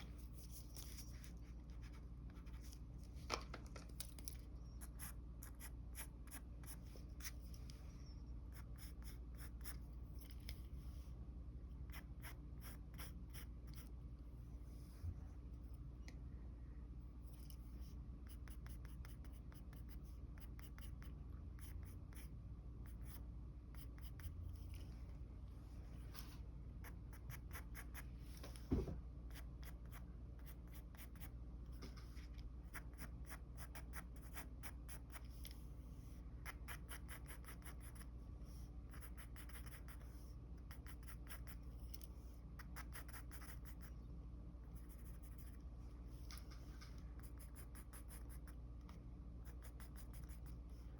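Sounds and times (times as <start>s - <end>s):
pencil scratching on paper: 8.5s - 9.8s, 36.0s - 42.0s, 42.6s - 43.9s, 44.8s - 45.6s, 49.4s - 50.8s.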